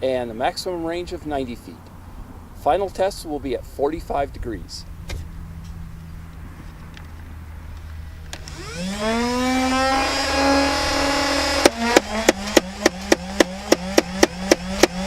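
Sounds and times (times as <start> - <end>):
flywheel motor whine: 8.3 - 15.0
toy blaster firing shots: 8.4 - 15.0.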